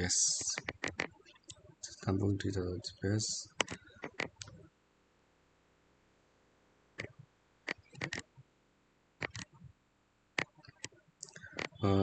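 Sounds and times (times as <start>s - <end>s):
computer mouse clicks: 0.4s - 1.6s, 3.5s - 4.6s, 7.0s - 8.3s, 9.2s - 9.5s, 10.4s - 11.8s.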